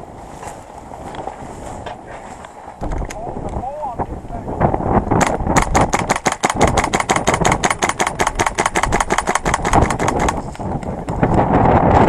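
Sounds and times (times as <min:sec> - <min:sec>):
airsoft gun firing full-auto: 0:05.2 - 0:10.4.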